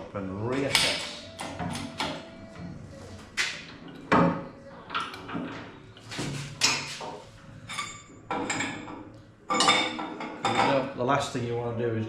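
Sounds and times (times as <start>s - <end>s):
metal knocks and scrapes: 5.0s - 10.8s.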